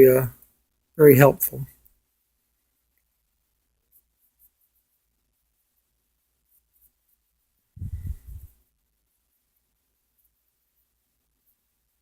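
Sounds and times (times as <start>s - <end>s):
low hum: 7.8s - 8.5s.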